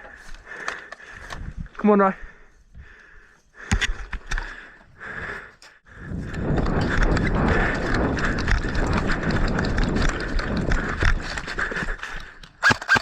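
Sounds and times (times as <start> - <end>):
running footfalls: 6.4 - 12.4.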